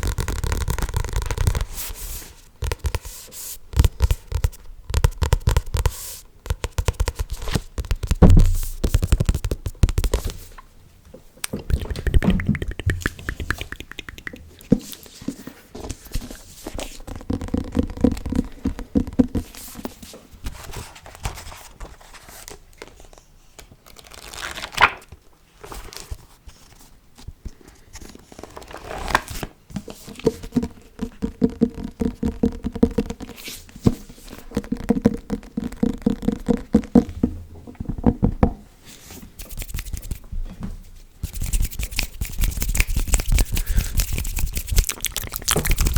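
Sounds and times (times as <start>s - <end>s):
clicking and crackling from mouth: 11.5s - 14.7s, 41.5s - 45.9s.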